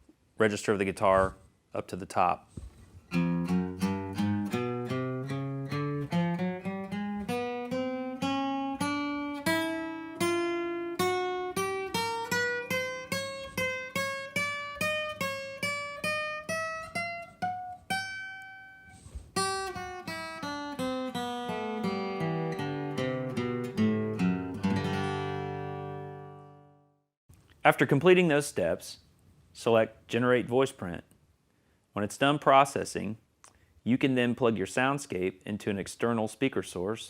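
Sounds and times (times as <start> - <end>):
acoustic guitar picking a scale: 3.1 - 26.8.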